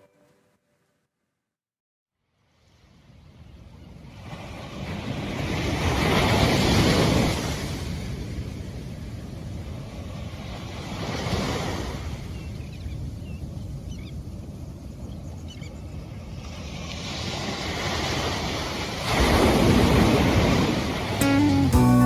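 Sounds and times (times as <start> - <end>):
surf washing in: 2.5 - 12.6, 15.8 - 21.8.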